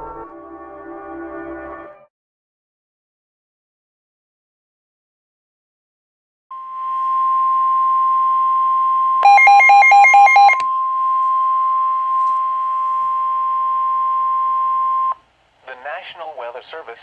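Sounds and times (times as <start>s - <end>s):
steady alarm tone: 6.5s - 15.2s
rapid alternating beeps: 9.2s - 10.6s
faint radio hiss: 15.2s - 17.0s.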